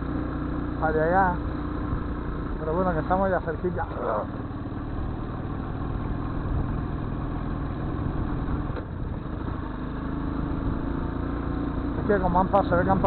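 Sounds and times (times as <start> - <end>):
motorcycle engine running: 0.0 - 13.0.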